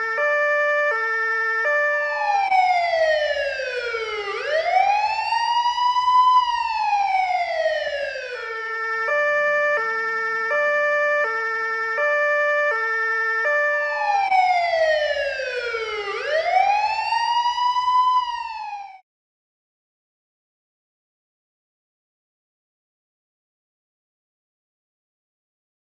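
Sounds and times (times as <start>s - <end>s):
police siren: 0.0s - 19.0s.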